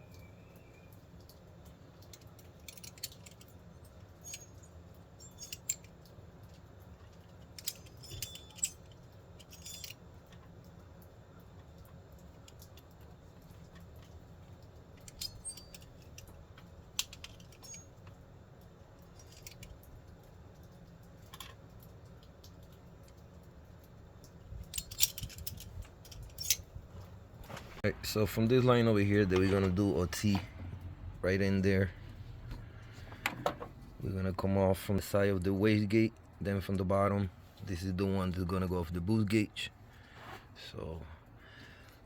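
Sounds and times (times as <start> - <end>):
small parts clicking and rattling: 0.0 - 27.6
steady low hum: 0.0 - 42.0.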